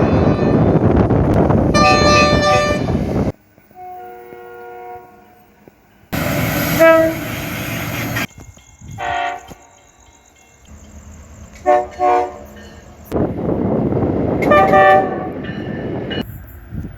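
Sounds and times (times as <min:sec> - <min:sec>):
train rumble: 0:00.0 - 0:16.9
train horn chord: 0:01.7 - 0:03.0, 0:03.7 - 0:05.6, 0:06.7 - 0:07.3, 0:11.6 - 0:12.5, 0:14.4 - 0:15.4.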